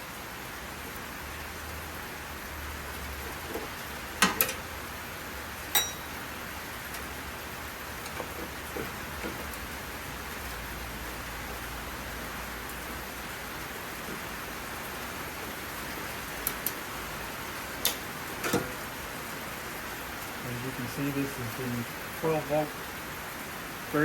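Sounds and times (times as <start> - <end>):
steady hiss: 3.8 - 24.0
screwdriver clinking on sheet metal: 5.7 - 6.2.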